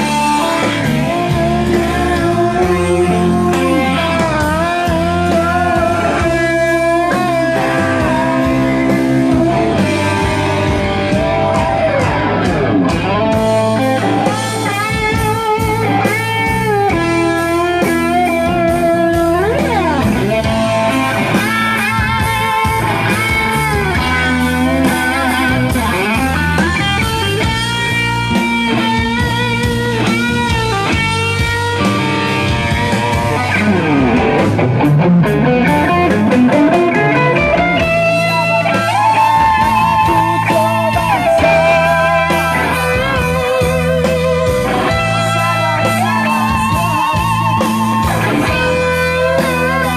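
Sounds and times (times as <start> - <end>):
lead electric guitar bending notes: 0.0 - 49.9
rock band playing: 0.0 - 49.9.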